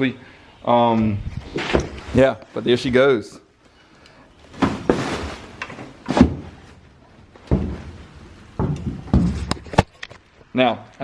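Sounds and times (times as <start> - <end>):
rustling handling noise: 3.6 - 10.5
sharp knocks and dull thuds: 4.6 - 6.7, 7.4 - 9.9.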